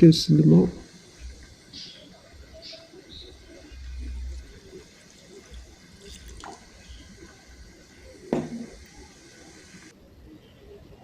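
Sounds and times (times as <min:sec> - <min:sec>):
water pouring into saucepan: 0:03.3 - 0:09.9
object knocking down: 0:08.3 - 0:08.7.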